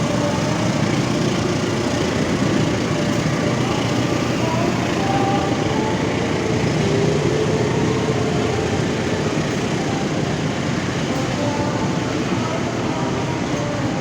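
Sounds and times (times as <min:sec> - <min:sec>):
engine rumbling steadily: 0:00.0 - 0:14.0.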